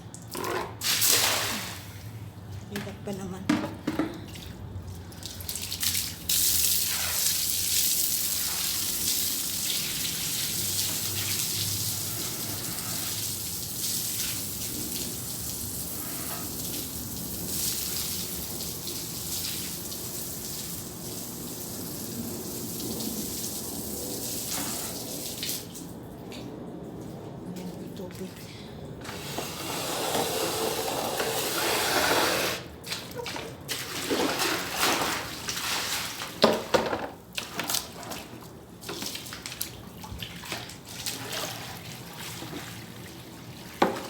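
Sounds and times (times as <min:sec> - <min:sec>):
hose spraying onto hard surface: 0:05.7 - 0:25.7, 0:29.0 - 0:32.7.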